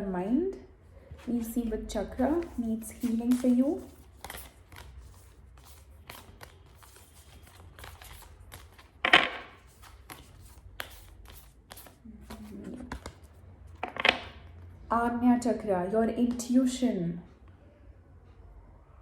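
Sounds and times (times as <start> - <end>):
cards being shuffled: 2.3 - 14.4.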